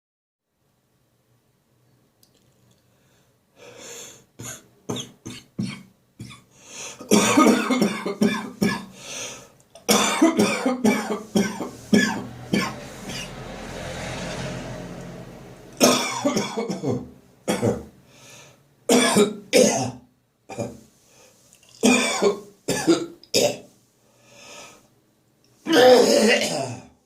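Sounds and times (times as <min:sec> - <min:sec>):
person coughing: 0:04.4 - 0:09.0, 0:09.8 - 0:13.3, 0:15.8 - 0:17.9, 0:18.9 - 0:20.8, 0:21.8 - 0:23.6, 0:25.7 - 0:27.0.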